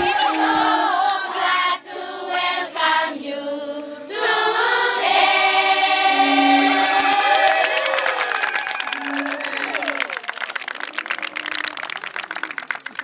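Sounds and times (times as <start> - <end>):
choir singing: 0.0 - 8.1.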